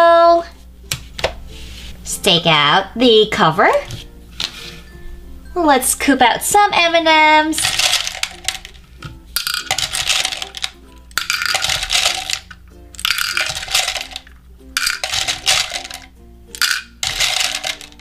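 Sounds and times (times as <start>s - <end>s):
candies clattering into teacup: 7.5s - 18.0s.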